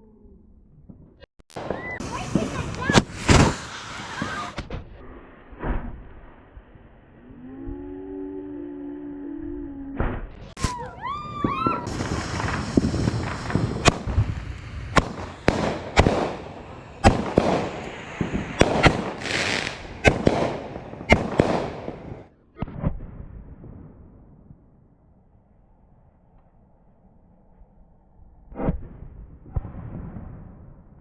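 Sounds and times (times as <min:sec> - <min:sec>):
fireworks crackling hiss: 0:01.5 - 0:04.7, 0:10.6 - 0:22.3
firework bangs: 0:01.5 - 0:04.8, 0:10.5 - 0:23.9
firework whistles: 0:01.6 - 0:04.7, 0:10.6 - 0:22.2.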